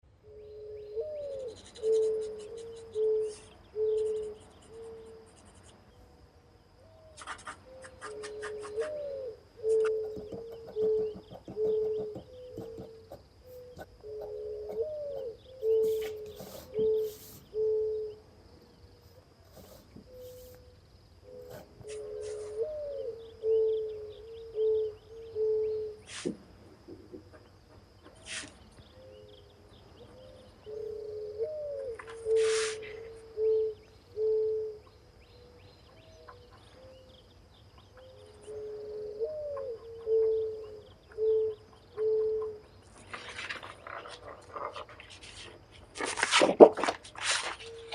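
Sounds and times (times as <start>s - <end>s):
dove cooing: 0.2s - 5.3s, 6.8s - 26.3s, 28.2s - 37.2s, 37.9s - 45.5s
breathy hiss: 15.8s - 17.6s, 19.1s - 20.7s.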